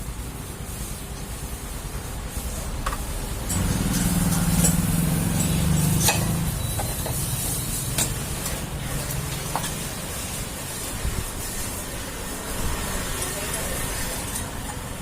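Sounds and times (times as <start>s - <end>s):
metal tools clinking: 3.4s - 6.4s.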